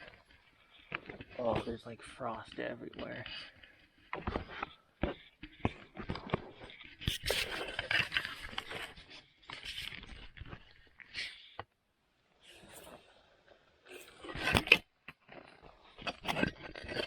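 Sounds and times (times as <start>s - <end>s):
scraping and rustling handling noises: 0.0s - 11.7s.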